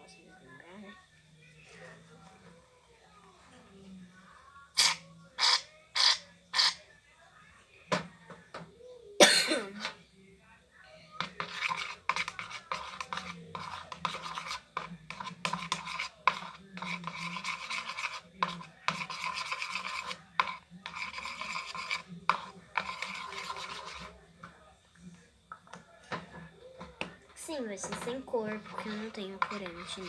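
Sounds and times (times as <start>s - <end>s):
utensil scraping a container: 4.8s - 6.8s, 11.2s - 24.2s, 27.4s - 30.0s.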